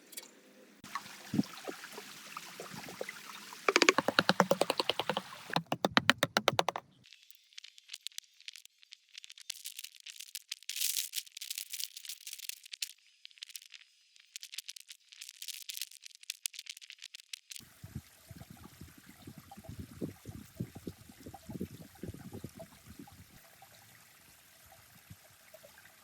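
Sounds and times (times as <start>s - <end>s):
water running and trickling: 0.8s - 6.7s, 17.5s - 26.0s
dry crackling rattle: 7.7s - 17.6s.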